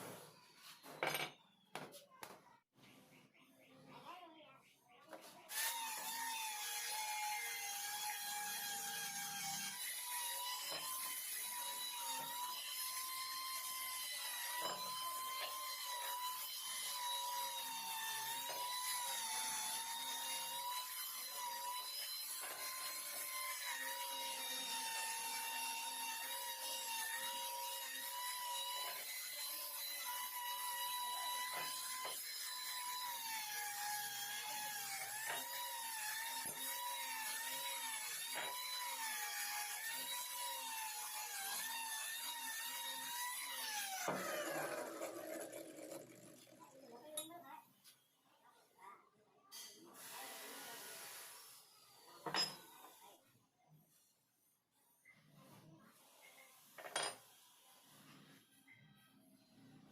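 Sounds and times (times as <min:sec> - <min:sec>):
small power tool motor whining: 0:05.5 - 0:46.8.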